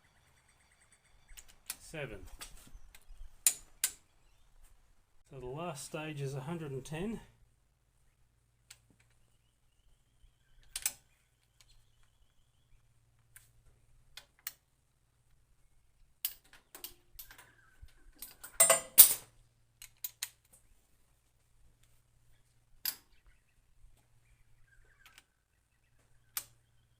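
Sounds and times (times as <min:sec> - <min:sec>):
metal clinks: 0:18.2 - 0:19.3
metallic clatter: 0:18.2 - 0:19.3.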